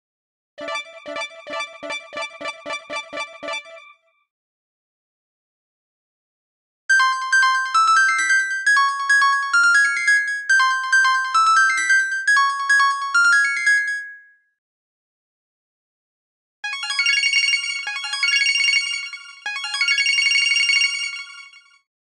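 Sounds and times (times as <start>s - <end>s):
phone ringtone synth melody: 0.6s - 4.1s, 6.9s - 14.2s.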